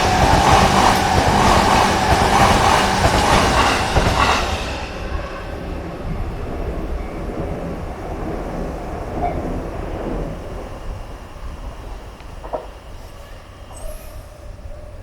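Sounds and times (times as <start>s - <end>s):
electric train rumbling: 0.0s - 15.0s.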